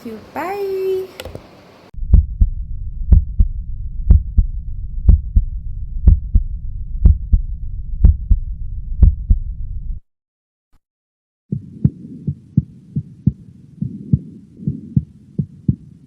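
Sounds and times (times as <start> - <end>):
heartbeat: 2.0 - 10.0, 11.5 - 16.0.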